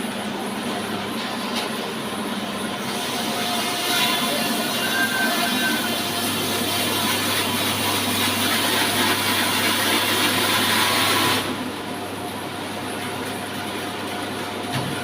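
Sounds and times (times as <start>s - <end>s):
low machine hum: 0.0s - 9.0s.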